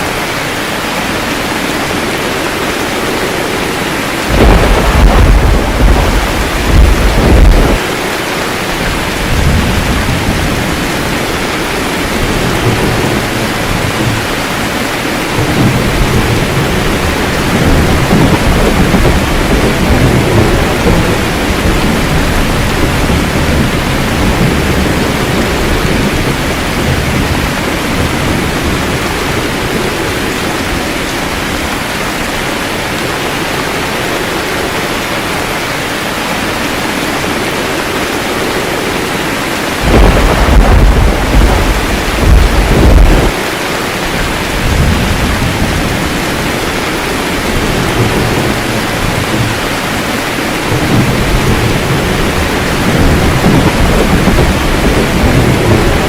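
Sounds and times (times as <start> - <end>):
rain falling: 0.0 - 56.0
low rumble of thunder: 3.8 - 8.0, 8.9 - 31.4, 39.8 - 43.5, 44.2 - 56.0.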